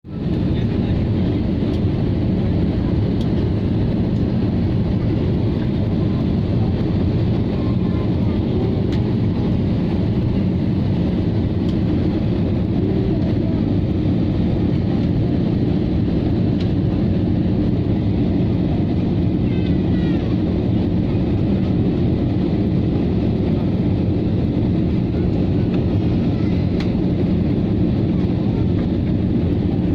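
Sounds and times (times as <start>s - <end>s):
low mechanical rumble: 0.1s - 29.9s.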